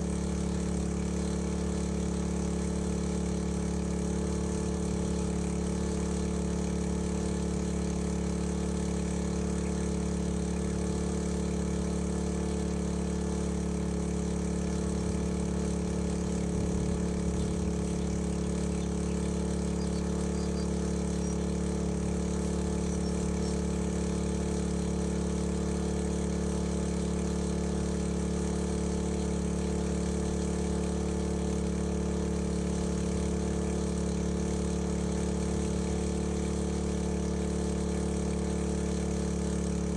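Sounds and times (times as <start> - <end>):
small petrol engine running: 0.0 - 39.9.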